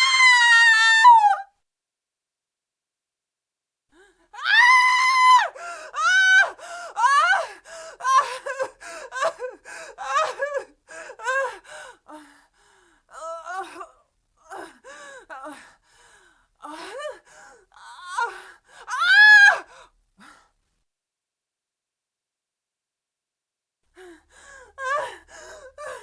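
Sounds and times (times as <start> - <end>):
woman screaming: 0.0 - 1.5, 4.4 - 7.4.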